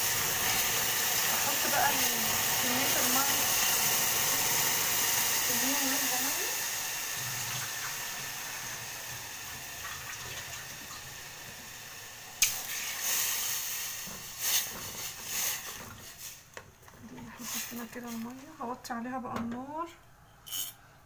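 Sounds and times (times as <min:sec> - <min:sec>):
water pouring into a pot: 0:00.0 - 0:16.5.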